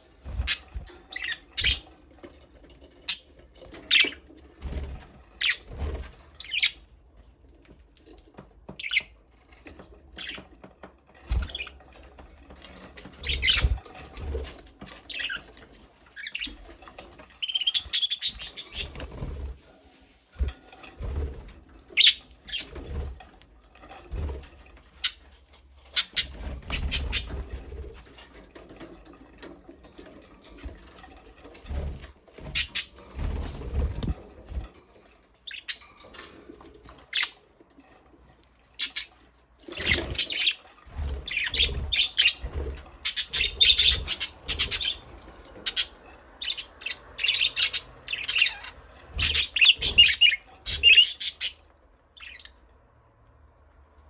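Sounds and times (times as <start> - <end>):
budgerigars chirping: 43.1 - 45.0, 45.6 - 51.6.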